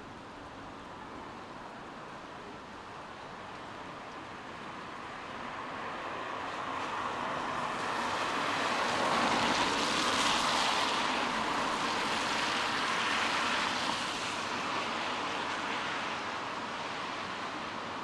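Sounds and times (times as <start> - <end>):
rain: 0.0 - 18.0
tyres hissing on wet road: 4.4 - 18.0.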